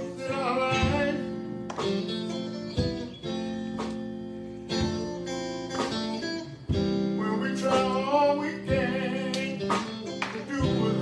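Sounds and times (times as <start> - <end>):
guitar strumming chords: 0.0 - 11.0.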